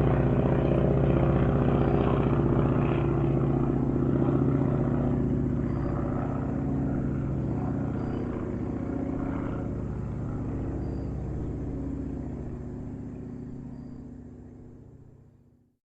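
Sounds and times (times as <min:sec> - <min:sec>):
propeller airplane engine: 0:00.0 - 0:15.8.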